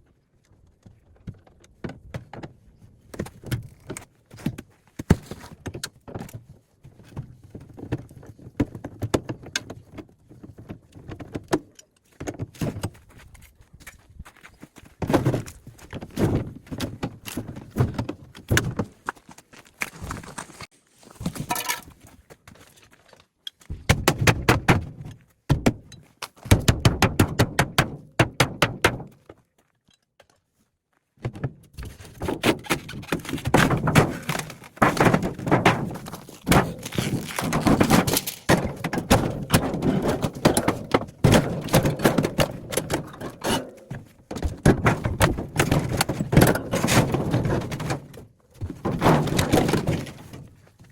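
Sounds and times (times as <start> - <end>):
refrigerator parts clattering: 21.2 - 21.9, 31.8 - 50.9.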